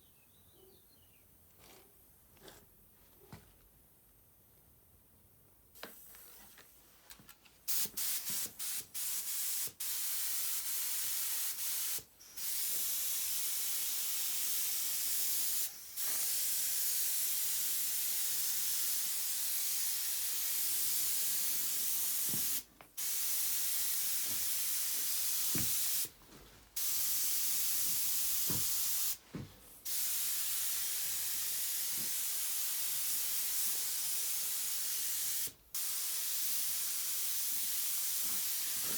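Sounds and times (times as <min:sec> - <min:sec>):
spray hissing: 0:07.7 - 0:26.2, 0:26.8 - 0:29.2, 0:29.8 - 0:38.9.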